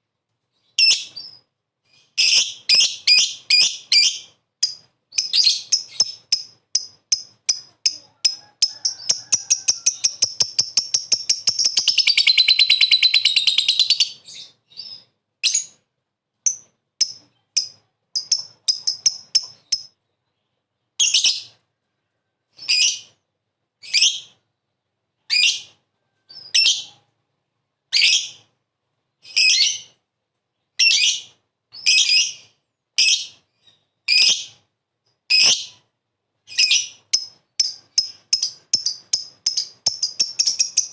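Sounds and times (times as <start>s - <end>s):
lovebird chirping and trilling: 0.6s - 15.8s, 16.4s - 20.0s, 21.0s - 21.6s, 22.6s - 23.1s, 23.8s - 24.4s, 25.3s - 27.0s, 27.9s - 28.5s, 29.2s - 30.0s, 30.8s - 34.6s, 35.3s - 35.8s, 36.5s - 40.9s.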